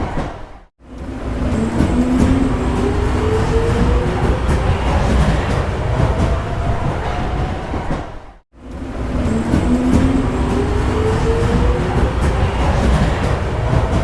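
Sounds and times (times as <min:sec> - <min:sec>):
subway train wheels rumbling: 0:00.0 - 0:14.0
train motor whine rising: 0:08.7 - 0:14.0.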